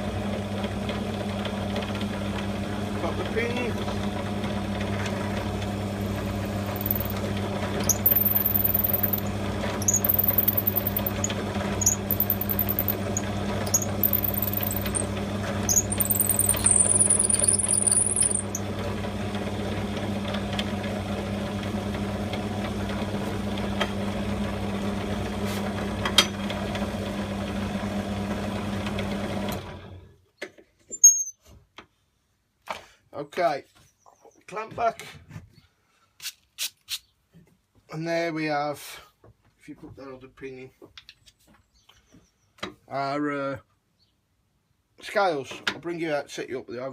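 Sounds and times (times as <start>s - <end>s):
drill press motor humming: 0.2s - 23.9s
drill bit pecking through handle: 6.1s - 18.7s.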